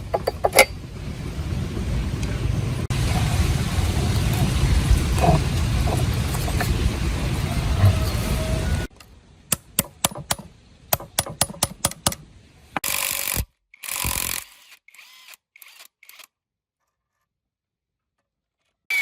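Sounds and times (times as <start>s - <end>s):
power tool bursts: 12.8s - 15.3s.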